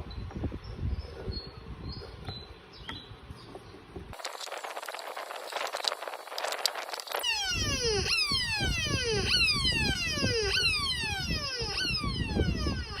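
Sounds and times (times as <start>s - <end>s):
electronic fire alarm siren: 6.4s - 13.0s.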